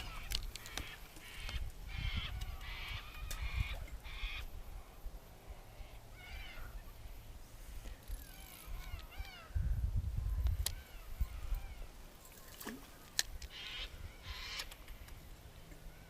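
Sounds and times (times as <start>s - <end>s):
harsh screechy bird calls: 0.0s - 4.5s, 13.5s - 14.8s
birds chirping: 0.0s - 16.0s.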